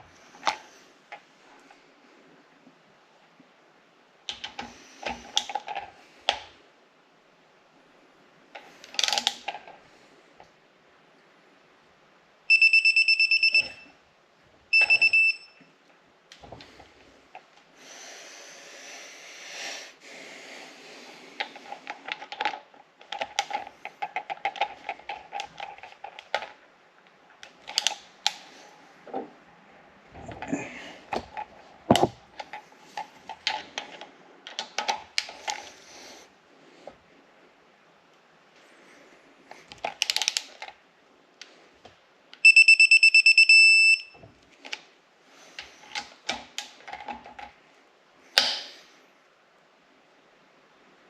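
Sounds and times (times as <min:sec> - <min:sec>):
torque wrench alarm beeps: 0:12.5 - 0:13.9, 0:14.7 - 0:15.7, 0:42.4 - 0:44.2.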